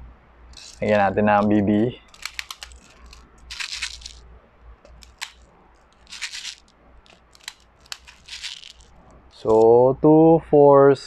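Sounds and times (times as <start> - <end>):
pellets clicking into magazine: 0.6 - 4.2, 4.9 - 9.6.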